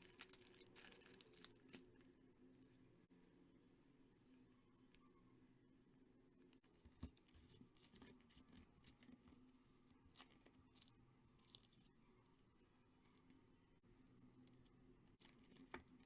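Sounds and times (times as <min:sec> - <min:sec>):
packaging crinkling and tearing: 0:00.0 - 0:01.9
low room hum: 0:00.0 - 0:16.0.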